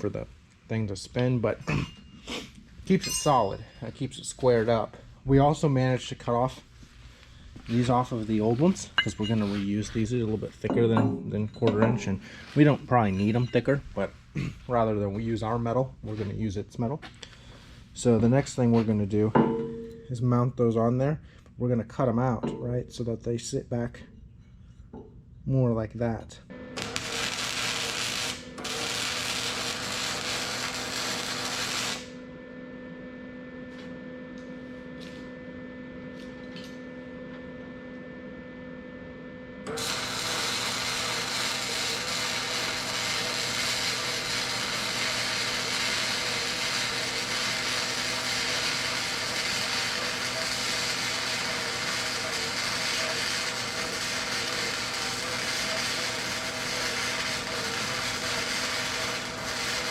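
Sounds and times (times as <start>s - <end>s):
steady hum: 0.0s - 20.4s, 26.4s - 59.9s
angle grinder cutting steel: 26.8s - 32.2s, 39.7s - 59.9s.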